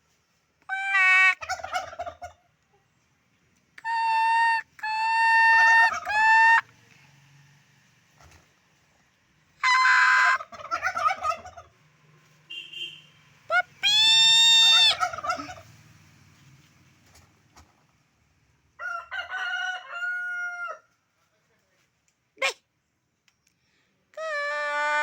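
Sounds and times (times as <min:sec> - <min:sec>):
turkey gobbling: 0:00.7 - 0:02.8, 0:03.8 - 0:06.6, 0:09.6 - 0:11.8, 0:13.5 - 0:15.8.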